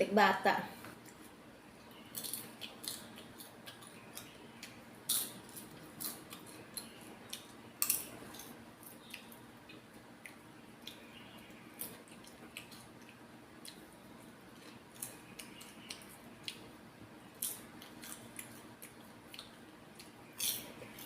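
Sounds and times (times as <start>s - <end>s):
popcorn crunching: 2.0s - 11.0s, 17.4s - 21.0s.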